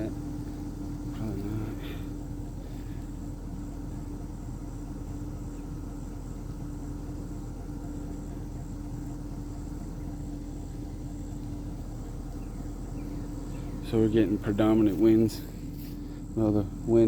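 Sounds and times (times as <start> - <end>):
constant mid-pitched hum: 0.0 - 17.0.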